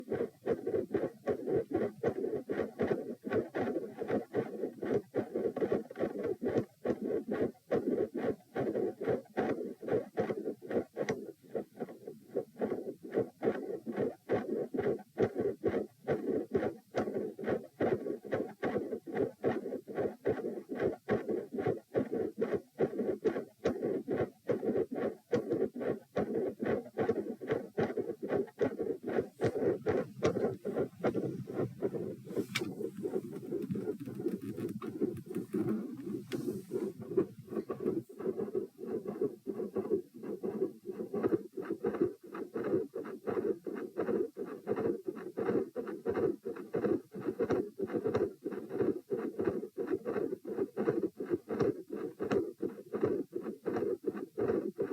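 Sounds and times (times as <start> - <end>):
scratchy rubs: 0.0 - 54.9
heartbeat: 6.4 - 49.6
heart murmur rushing sound: 27.0 - 39.2.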